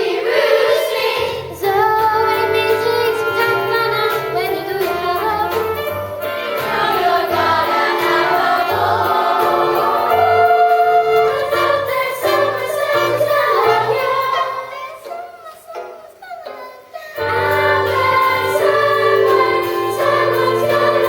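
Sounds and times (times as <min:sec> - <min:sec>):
group singing in chorus: 0:00.0 - 0:01.6, 0:06.3 - 0:15.1, 0:17.2 - 0:21.0
backing music with bass line: 0:01.5 - 0:14.4, 0:17.2 - 0:21.0.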